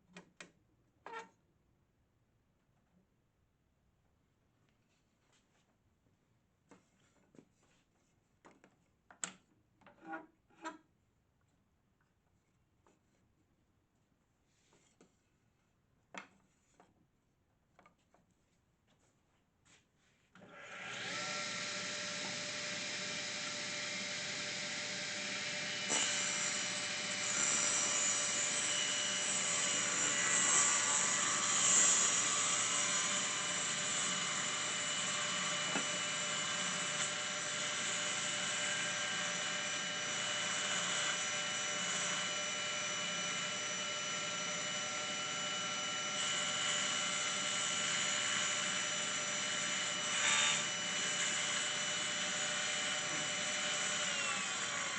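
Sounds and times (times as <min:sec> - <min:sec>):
table saw whining: 0:20.4 - 0:54.9.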